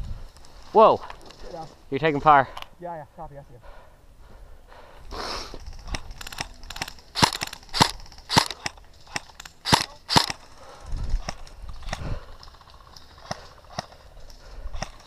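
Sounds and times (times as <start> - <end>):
distant airsoft clicks: 5.6 - 10.5
airsoft gun shots: 5.9 - 10.4.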